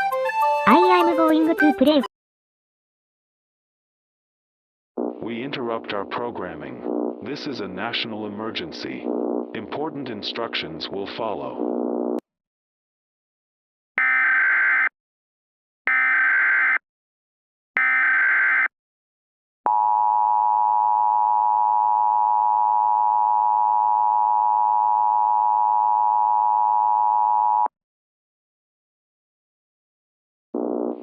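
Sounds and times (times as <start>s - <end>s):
long steady attention tone: 5.0s - 7.3s.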